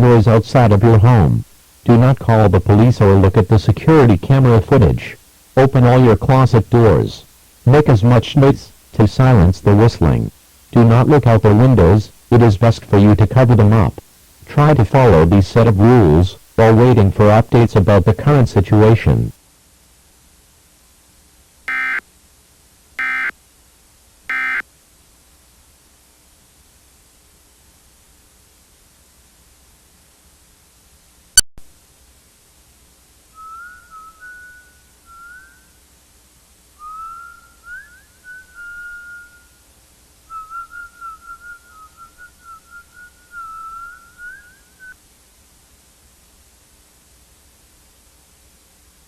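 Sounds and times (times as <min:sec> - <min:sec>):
faint steady hiss: 0:00.0 - 0:49.0
buzzy alert data tone bursts: 0:21.7 - 0:22.0, 0:23.0 - 0:23.3, 0:24.3 - 0:24.6
person whistling a tune: 0:36.8 - 0:39.4.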